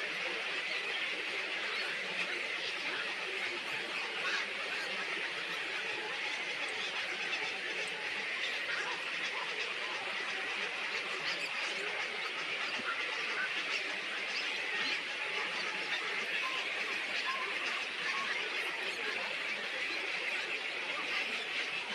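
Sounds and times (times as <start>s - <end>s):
small birds chattering and chirping: 0.1s - 21.9s.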